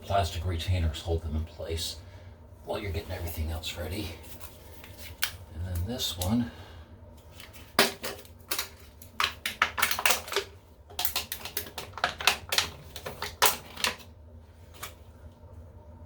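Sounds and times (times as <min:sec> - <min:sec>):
plastic packaging crackling: 0:07.3 - 0:14.1.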